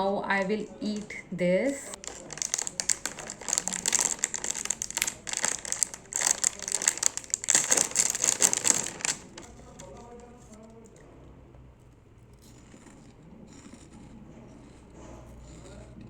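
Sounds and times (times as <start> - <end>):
plastic snack packet crinkling: 0.8 - 1.2, 1.8 - 11.0.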